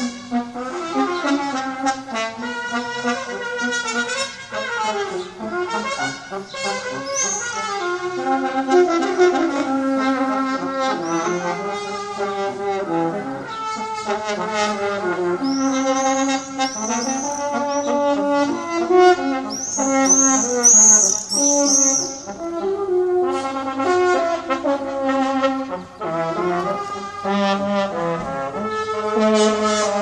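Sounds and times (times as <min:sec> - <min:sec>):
brass-like groaning tones: 0:00.0 - 0:30.0
quick high chirps: 0:19.5 - 0:22.3.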